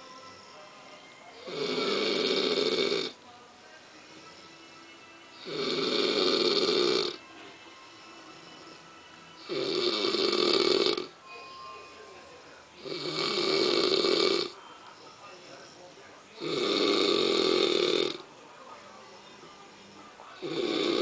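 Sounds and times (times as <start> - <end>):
person snoring: 1.4 - 3.2, 5.3 - 7.2, 9.4 - 11.1, 12.8 - 14.6, 16.4 - 18.2, 20.4 - 21.0.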